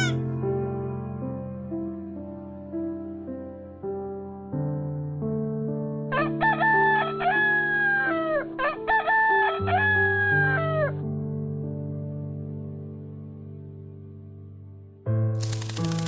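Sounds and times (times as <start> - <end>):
rooster crowing: 0.0 - 0.2
soft piano music: 0.0 - 16.0.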